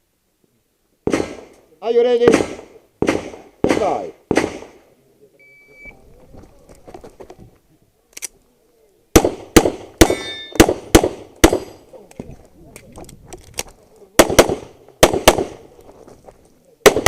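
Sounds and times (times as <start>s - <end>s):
handgun shots: 9.2s - 11.8s.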